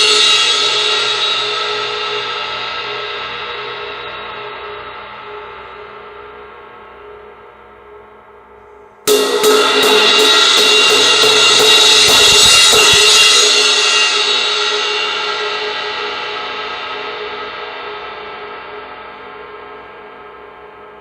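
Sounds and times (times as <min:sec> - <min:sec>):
crash cymbal struck hard: 0:09.1 - 0:21.0.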